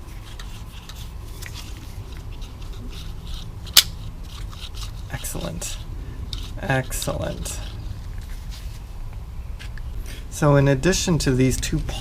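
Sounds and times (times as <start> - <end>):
small parts clicking and scratching: 0.0 - 8.9
steady low hum: 0.0 - 12.0.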